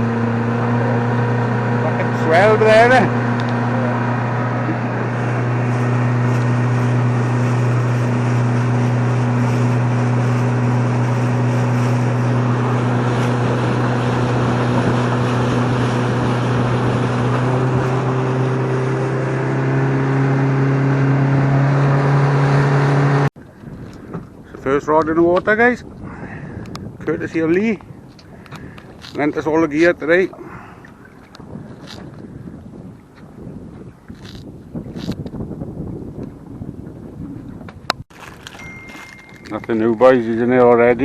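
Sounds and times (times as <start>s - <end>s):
boat engine humming: 0.0s - 41.0s
wind: 0.0s - 41.0s.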